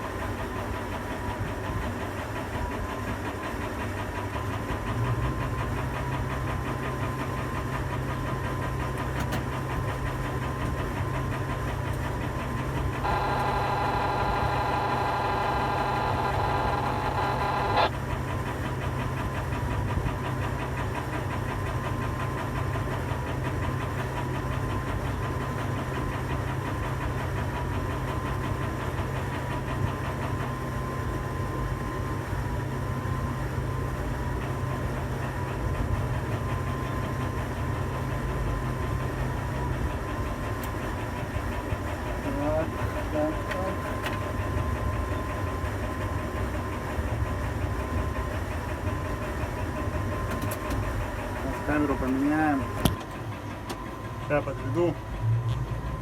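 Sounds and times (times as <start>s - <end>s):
crane machinery low hum: 0.0s - 56.0s
multi-tone motor whine: 12.8s - 18.0s.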